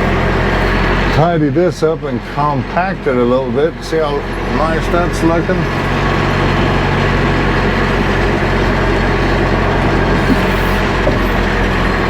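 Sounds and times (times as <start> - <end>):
diesel engine running: 0.0 - 12.0.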